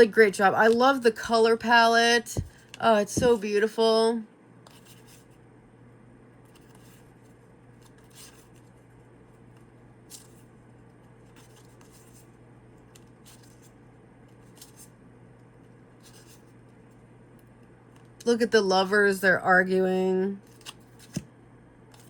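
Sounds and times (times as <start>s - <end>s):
low room hum: 0.0s - 22.0s
cards flicking and rustling: 6.5s - 8.8s, 9.6s - 10.5s, 11.2s - 14.9s, 16.0s - 16.6s, 20.4s - 21.3s.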